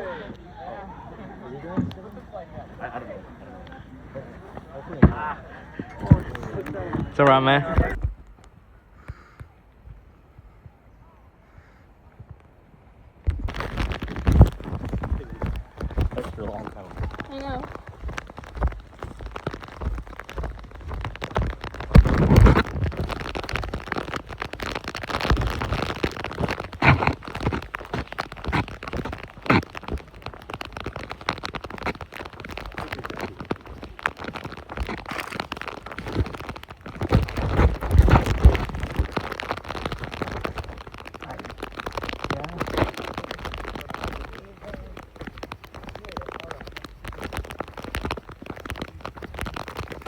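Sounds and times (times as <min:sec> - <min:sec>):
wind buffeting microphone: 0:13.1 - 0:50.0.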